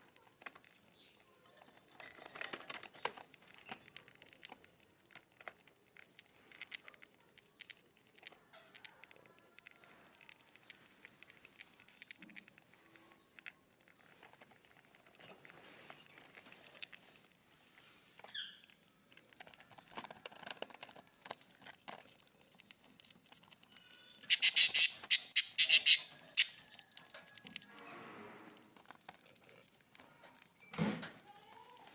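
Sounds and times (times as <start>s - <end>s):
scratching and shuffling: 0.0s - 31.9s
chicks chittering: 22.0s - 27.0s
budgie chirp: 24.1s - 26.7s.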